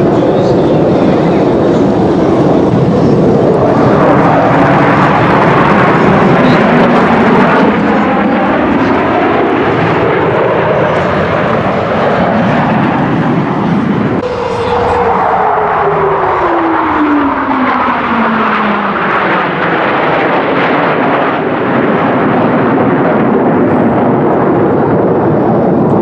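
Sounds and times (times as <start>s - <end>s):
airplane engines: 0.0s - 26.0s.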